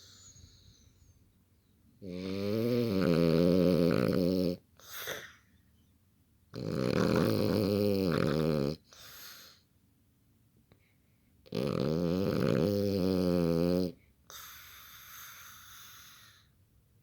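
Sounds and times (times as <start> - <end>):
dog snoring: 2.0 - 5.4, 6.5 - 9.5, 11.5 - 16.4.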